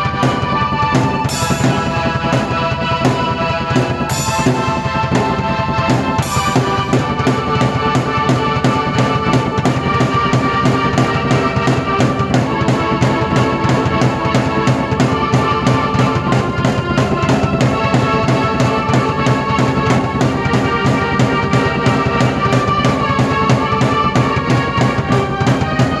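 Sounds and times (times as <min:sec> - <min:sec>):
drum beat: 0:00.0 - 0:26.0
keyboard chords and melody: 0:00.0 - 0:26.0
cymbal crash: 0:03.8 - 0:08.1.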